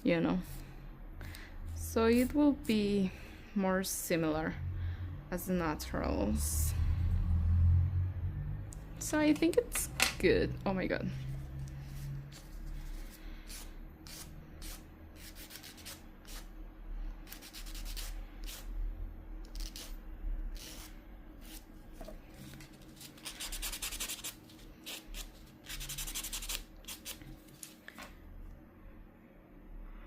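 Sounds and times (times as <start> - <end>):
nail file scraping fingernail: 13.5 - 16.5, 17.3 - 18.7, 19.5 - 19.9, 20.6 - 20.9, 23.2 - 27.2.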